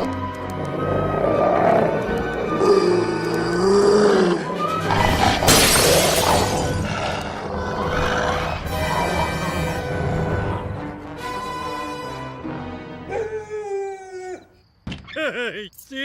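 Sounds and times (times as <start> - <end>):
dogs growling and snarling: 0.0 - 11.8
cartoon soundtrack music: 0.0 - 14.0.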